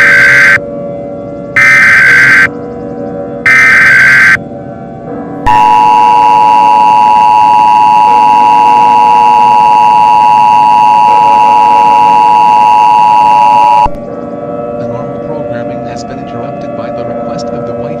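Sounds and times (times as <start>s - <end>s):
two-tone alarm: 0.0s - 0.6s, 1.6s - 2.5s, 3.5s - 4.4s, 5.5s - 14.0s.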